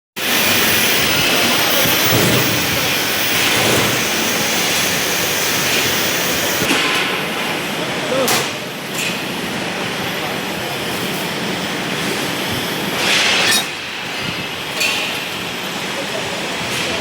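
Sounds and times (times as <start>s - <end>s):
welding arc crackling and hissing: 0.2s - 6.7s.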